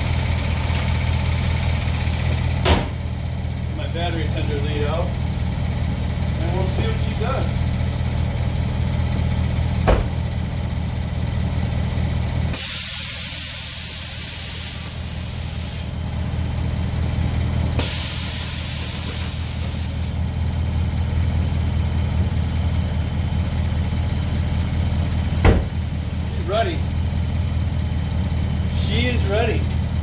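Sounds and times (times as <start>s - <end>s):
truck engine idling: 0.0s - 30.0s
compressed air hissing: 12.5s - 15.9s, 17.8s - 20.2s.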